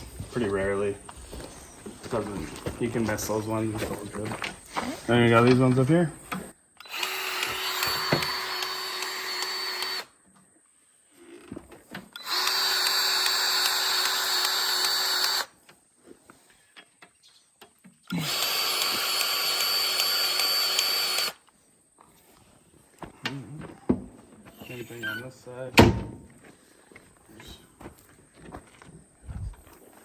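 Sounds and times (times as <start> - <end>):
grease gun whirring: 6.8 - 10.1, 12.1 - 15.6, 18.1 - 21.4.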